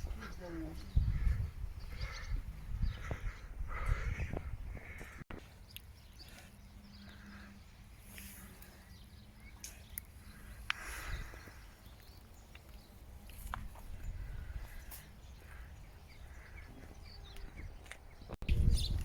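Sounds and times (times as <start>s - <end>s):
wind rumble on microphone: 0.0s - 5.3s, 13.3s - 19.0s.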